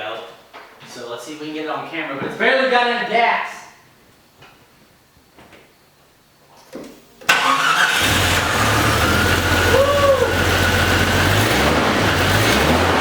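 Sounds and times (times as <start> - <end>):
car engine starting and idling: 7.3 - 13.0.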